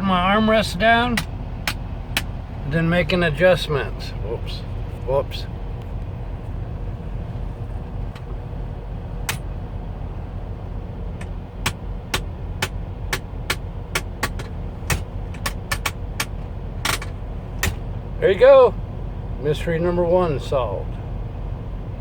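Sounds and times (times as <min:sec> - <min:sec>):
truck engine rumbling: 0:00.0 - 0:22.0
armrest ratchet clicking: 0:11.2 - 0:17.8.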